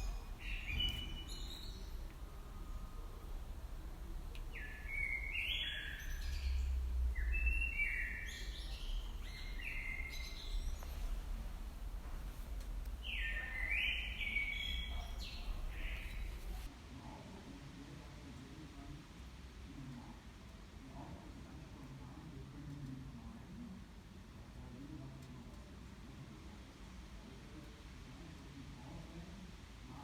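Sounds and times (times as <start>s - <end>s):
songbird chirping: 0.0s - 16.7s
low outdoor rumble: 0.0s - 16.8s.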